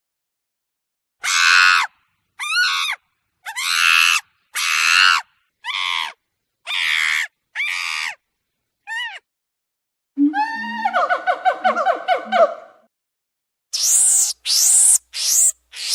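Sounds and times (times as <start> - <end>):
monkey screaming calls: 1.2 - 8.2, 8.9 - 9.2, 10.4 - 12.8, 13.8 - 15.9.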